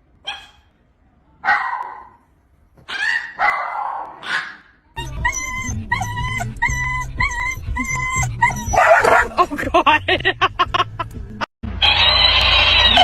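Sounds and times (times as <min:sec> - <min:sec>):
dog barking: 0:00.3 - 0:00.7, 0:01.4 - 0:02.2, 0:02.9 - 0:04.7, 0:08.5 - 0:09.4.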